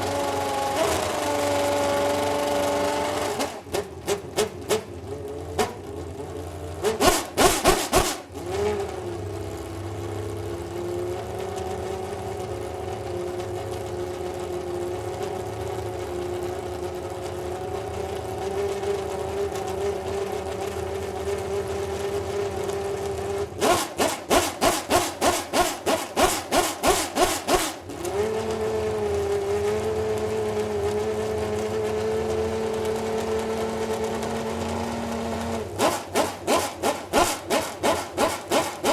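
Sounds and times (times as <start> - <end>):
race car engine idling: 3.5 - 7.4, 35.6 - 38.9.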